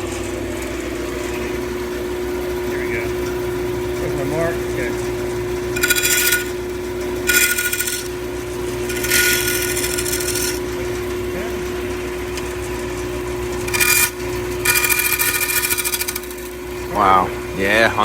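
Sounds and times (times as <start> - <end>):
bandsaw humming: 0.0 - 18.0
saw blade cutting wood: 5.8 - 6.6, 7.2 - 10.8, 13.6 - 16.6.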